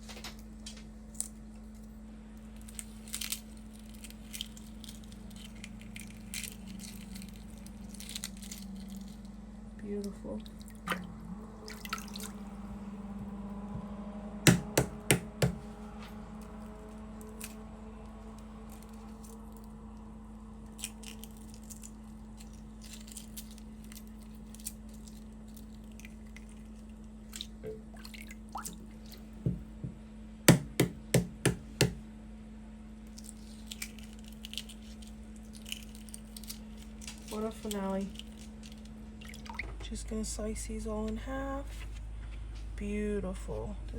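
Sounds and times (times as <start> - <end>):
soft peeling sounds: 0.0 - 9.5, 14.6 - 27.9, 33.0 - 39.6
steady low hum: 0.0 - 43.9.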